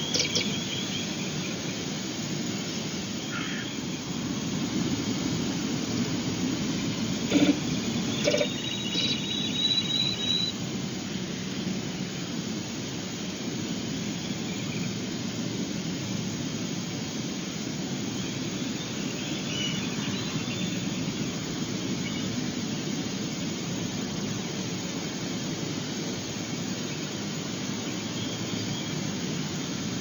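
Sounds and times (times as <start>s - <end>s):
ospreys chirping: 0.0s - 4.4s, 6.7s - 10.5s
rushing background noise: 0.0s - 30.0s.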